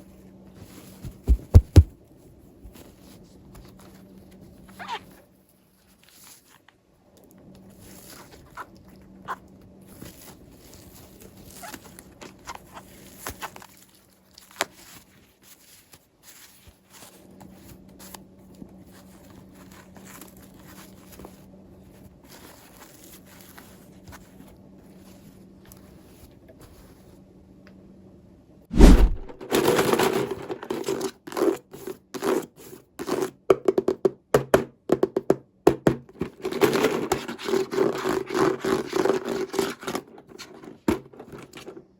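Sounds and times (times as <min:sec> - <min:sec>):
clicks and rustles of handling: 0:29.0 - 0:32.4, 0:36.0 - 0:41.9.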